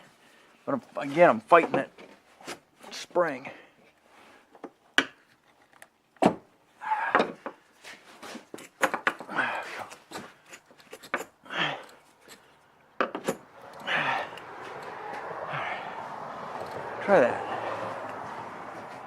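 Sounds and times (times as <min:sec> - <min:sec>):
person grunting: 0:06.8 - 0:07.2, 0:11.5 - 0:12.0, 0:13.6 - 0:18.0.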